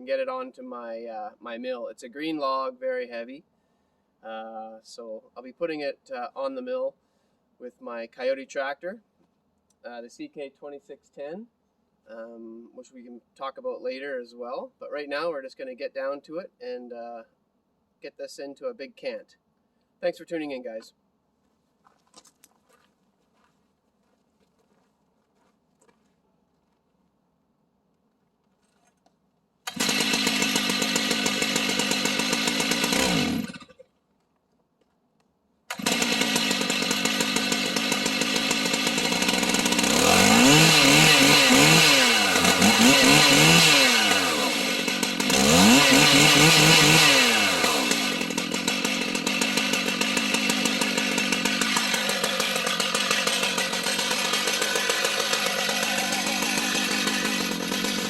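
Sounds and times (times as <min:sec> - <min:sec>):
chainsaw running: 0:29.6 - 0:33.9, 0:35.7 - 0:58.0.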